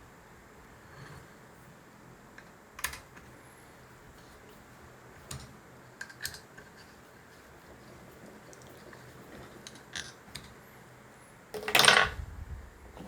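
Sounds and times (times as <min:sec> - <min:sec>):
faint hum: 0:00.0 - 0:13.0.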